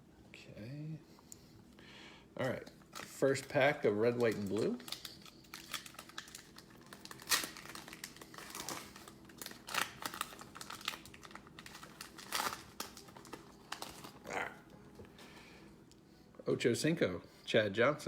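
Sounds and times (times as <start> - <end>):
cellophane wrapper crinkling and tearing: 2.6 - 14.7
cellophane snaps: 4.1 - 14.3.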